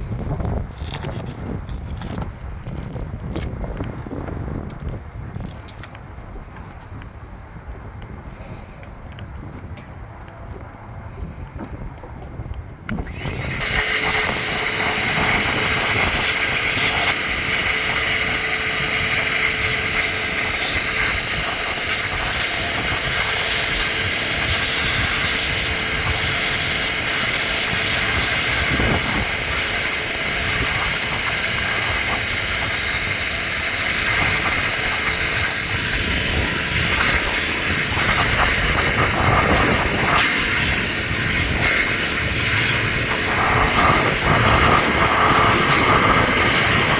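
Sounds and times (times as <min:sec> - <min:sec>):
vacuum cleaner running: 0:12.9 - 0:46.9.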